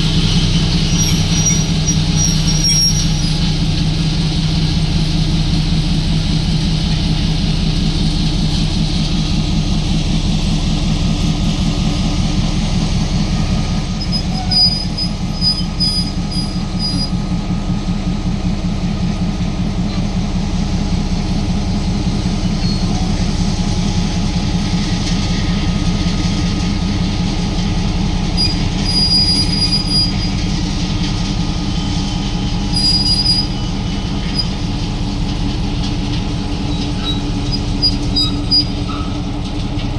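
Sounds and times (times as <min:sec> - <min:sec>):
locomotive engine throbbing: 0:00.0 - 0:39.9
train rolling rumble: 0:00.0 - 0:39.9
wheel squeals: 0:00.2 - 0:03.5, 0:10.6 - 0:17.2, 0:28.3 - 0:35.5, 0:36.5 - 0:39.4.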